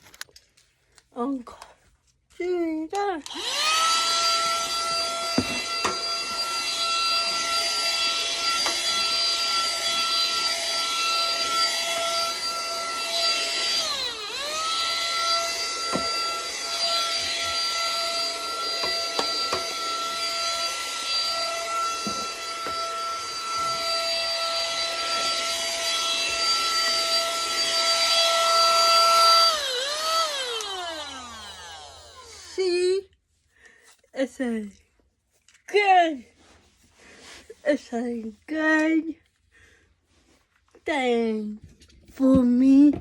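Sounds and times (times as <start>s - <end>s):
handheld vacuum motor whine: 3.2s - 33.0s.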